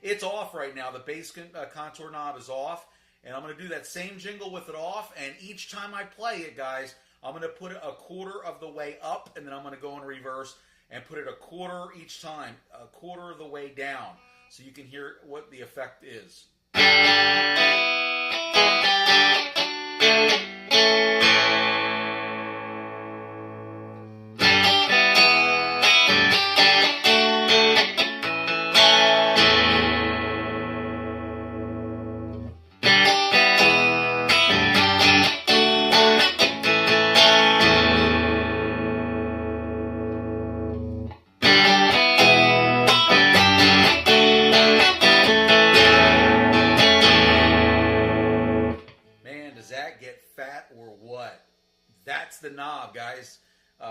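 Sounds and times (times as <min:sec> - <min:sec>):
clean electric guitar: 0:16.8 - 0:49.6.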